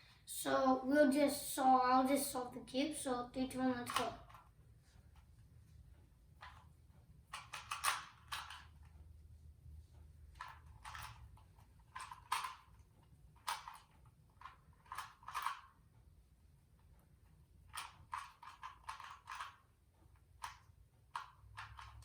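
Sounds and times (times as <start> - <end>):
puzzle cube turns clicking: 3.6 - 4.5, 7.3 - 8.9, 10.4 - 15.8, 17.6 - 22.0.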